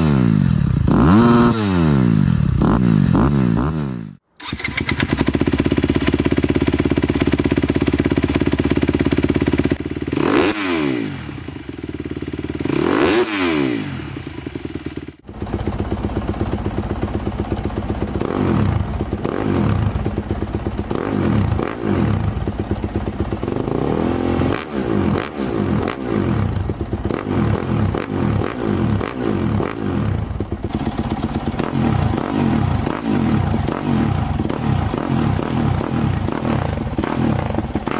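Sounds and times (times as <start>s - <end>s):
motocross bike revving: 0.0s - 37.9s.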